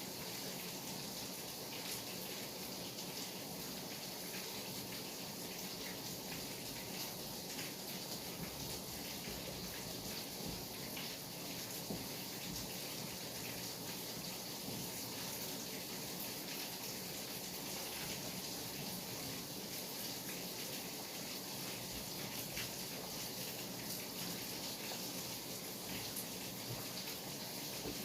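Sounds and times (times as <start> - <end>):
rain falling: 0.0 - 28.0.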